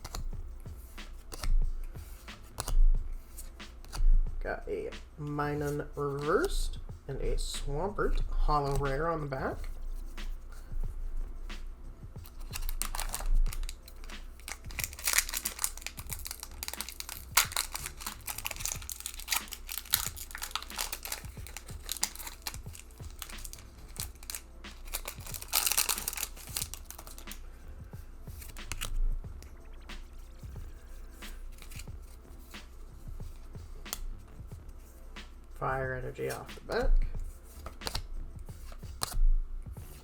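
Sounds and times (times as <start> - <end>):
cards rustling and clicking: 0.0 - 4.1, 5.0 - 6.6, 7.2 - 10.8, 11.5 - 27.6, 28.3 - 39.2
foil wrapper tearing and crinkling: 12.2 - 27.4, 28.4 - 29.0, 31.5 - 31.9.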